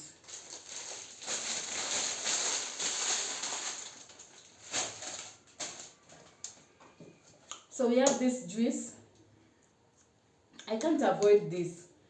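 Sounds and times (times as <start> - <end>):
packaging rustling: 0.0 - 6.4.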